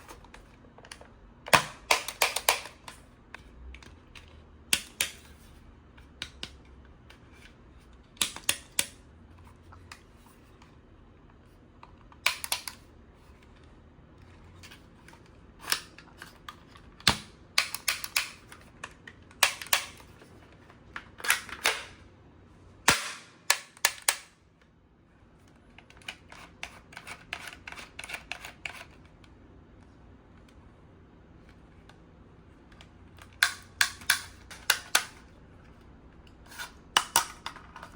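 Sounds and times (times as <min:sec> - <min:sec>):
toy gun plastic clicks: 0:00.9 - 0:03.0.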